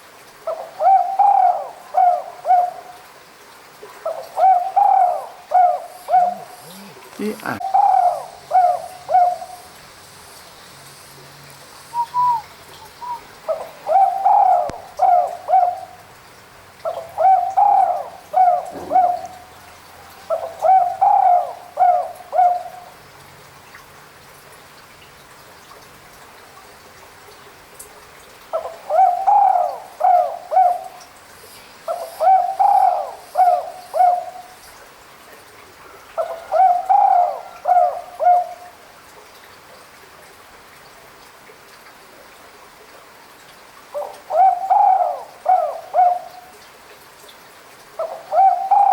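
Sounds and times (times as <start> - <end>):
dove cooing: 0.5 - 3.0, 4.0 - 9.7, 12.0 - 16.0, 16.8 - 22.9, 28.5 - 31.0, 31.9 - 34.5, 36.2 - 38.6, 44.0 - 46.5, 48.0 - 48.9.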